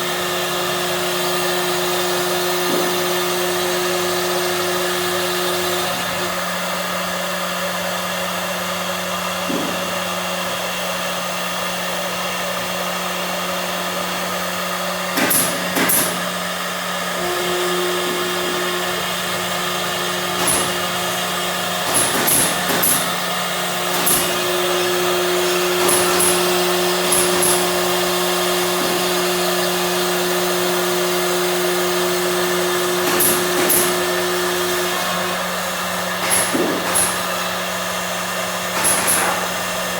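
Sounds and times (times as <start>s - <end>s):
machine motor hum: 0.0s - 39.9s
higher machine tone: 17.2s - 20.3s.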